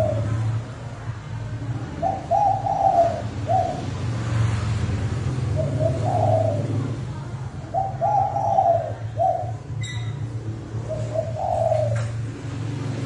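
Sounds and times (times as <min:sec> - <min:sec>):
dove cooing: 0:00.0 - 0:00.5, 0:01.8 - 0:04.0, 0:05.4 - 0:07.0, 0:07.6 - 0:12.4.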